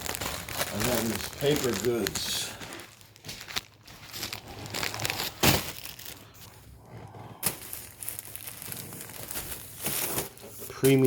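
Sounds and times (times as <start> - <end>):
paper packaging crinkling: 0.0 - 6.7, 7.4 - 11.0.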